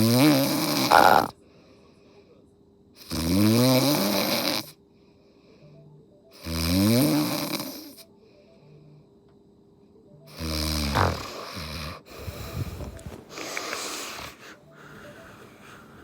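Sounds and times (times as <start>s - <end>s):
person snoring loudly: 0.0s - 1.4s, 3.0s - 4.7s, 6.4s - 8.0s, 10.3s - 12.1s.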